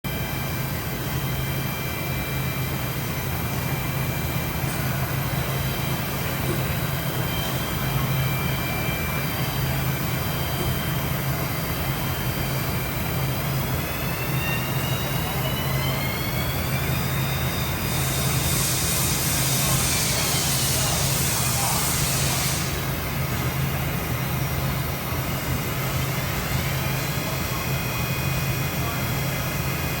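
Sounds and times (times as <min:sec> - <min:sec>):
spindle whine rising: 0:00.1 - 0:21.0
machining center humming: 0:00.1 - 0:30.0
hiss: 0:17.6 - 0:23.0.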